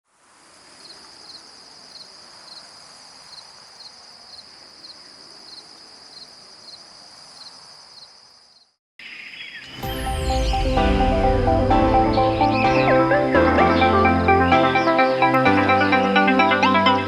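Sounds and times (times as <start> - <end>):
cricket steady trill: 0.1 - 8.8
cricket doubled chirps: 0.8 - 11.2.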